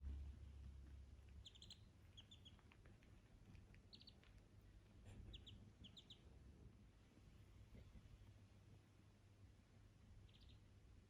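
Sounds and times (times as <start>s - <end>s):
duckling peeping: 1.3s - 2.8s, 3.8s - 4.4s, 5.2s - 6.3s, 10.2s - 10.7s.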